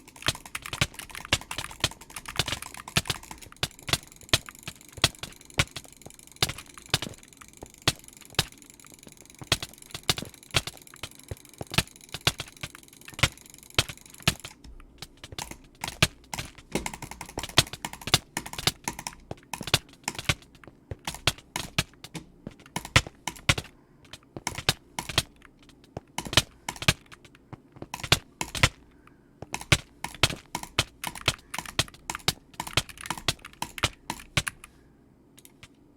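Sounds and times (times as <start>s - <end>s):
computer mouse clicking: 0.0s - 34.7s, 35.4s - 35.8s.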